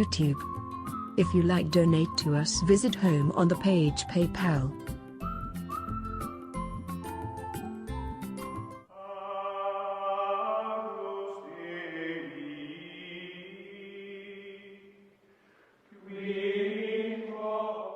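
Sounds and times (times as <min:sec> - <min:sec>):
long held chant-like tones: 0:08.9 - 0:15.1, 0:15.9 - 0:17.9.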